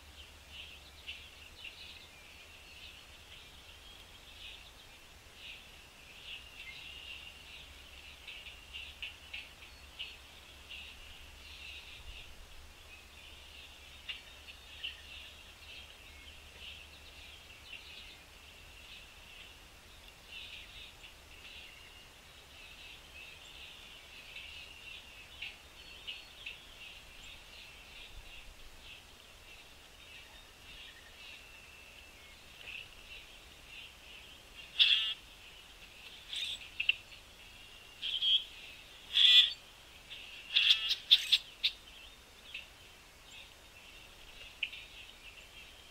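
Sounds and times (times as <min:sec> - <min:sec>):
birds chirping and twittering: 0:00.0 - 0:45.9
loud sharp bird chirps: 0:34.8 - 0:35.2, 0:39.1 - 0:39.6, 0:40.5 - 0:41.8.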